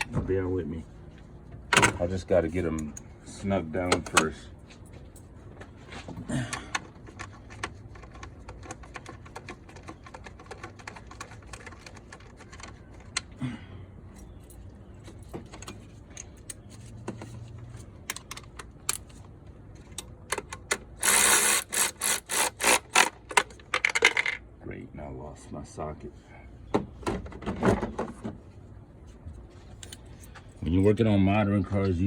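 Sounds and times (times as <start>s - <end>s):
socket ratchet clicking: 20.3s - 23.4s.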